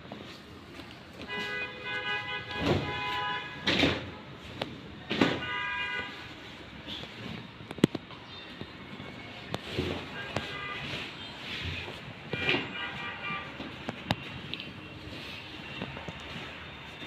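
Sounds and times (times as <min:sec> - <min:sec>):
vehicle horn honking: 0:01.3 - 0:03.7, 0:05.4 - 0:06.3, 0:10.0 - 0:11.6, 0:12.3 - 0:13.6.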